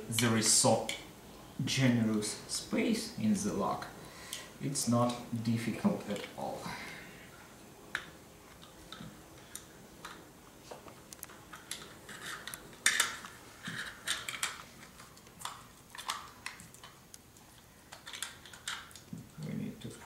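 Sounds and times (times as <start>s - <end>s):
plastic parts clicking and knocking: 11.1s - 17.0s, 17.9s - 19.3s.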